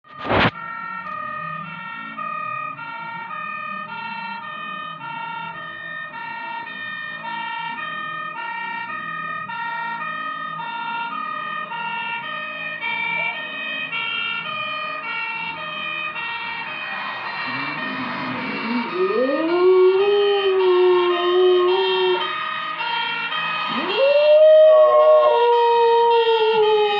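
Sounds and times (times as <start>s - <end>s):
two-tone emergency siren: 0.0s - 26.9s
dog howling: 16.9s - 22.3s, 23.7s - 26.9s.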